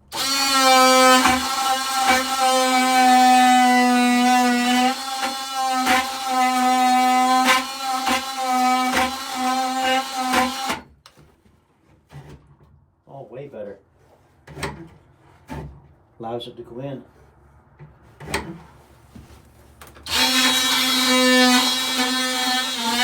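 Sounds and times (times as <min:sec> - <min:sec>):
power drill motor running: 0:00.0 - 0:10.8, 0:20.0 - 0:23.0
drill bit knocking: 0:00.1 - 0:10.8, 0:20.1 - 0:23.0.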